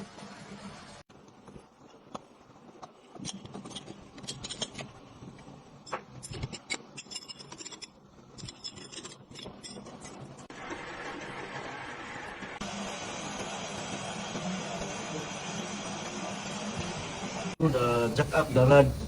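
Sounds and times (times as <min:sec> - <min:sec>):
metal tools clinking and scraping: 0:03.2 - 0:10.4.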